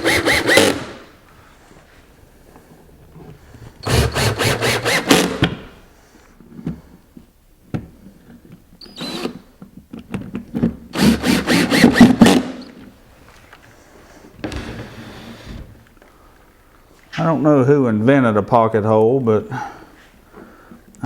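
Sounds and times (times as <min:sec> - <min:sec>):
power drill driving screws: 0:00.0 - 0:01.0, 0:03.8 - 0:05.5, 0:08.8 - 0:09.4, 0:11.0 - 0:12.6.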